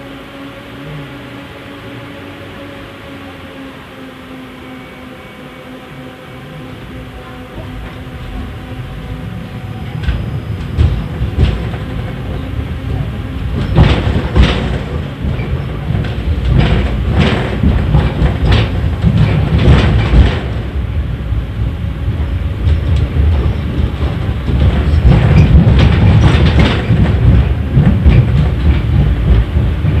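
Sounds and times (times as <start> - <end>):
tram low rumble: 0.0 - 30.0
wheels clattering on track: 6.9 - 30.0.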